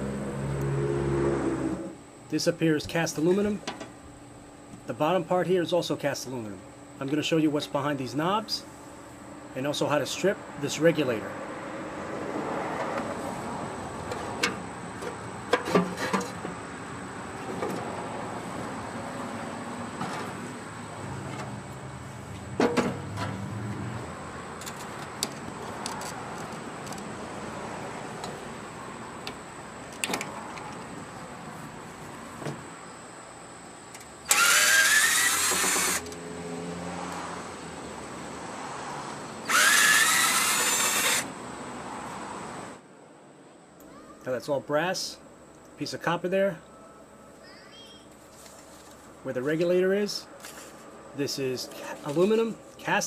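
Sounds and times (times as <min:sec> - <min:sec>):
power drill whining: 0:34.3 - 0:36.2, 0:39.4 - 0:41.3.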